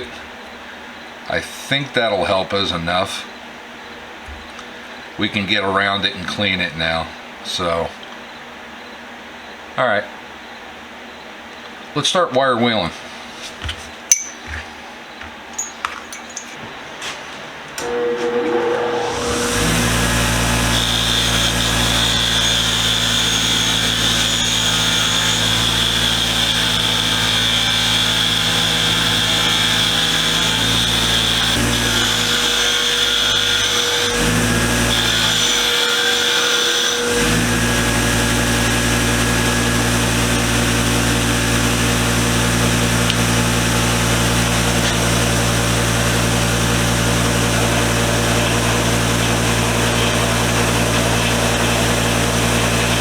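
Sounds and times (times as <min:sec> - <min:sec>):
high steady whine: 0:17.7 - 0:53.0
tool motor hum: 0:17.8 - 0:53.0
wire wheel scrubbing metal: 0:17.8 - 0:53.0.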